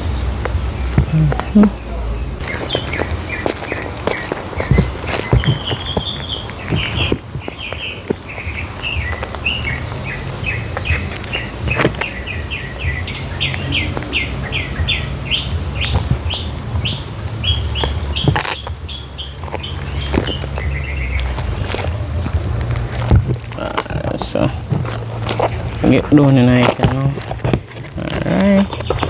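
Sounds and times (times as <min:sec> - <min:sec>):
songbird chirping: 0:00.0 - 0:29.0
low steady rumble: 0:08.9 - 0:29.0.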